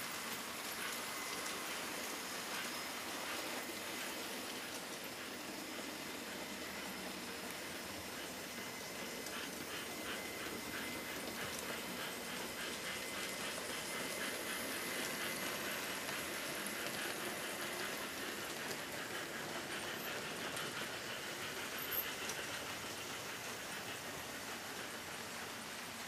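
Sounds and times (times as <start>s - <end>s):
model train running hiss and rumble: 0.0s - 26.0s.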